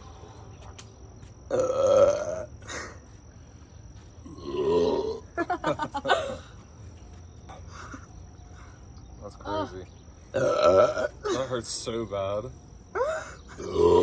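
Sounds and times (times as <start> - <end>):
long loud burps: 1.5 - 2.9, 4.2 - 5.4, 10.3 - 11.4, 13.6 - 14.0.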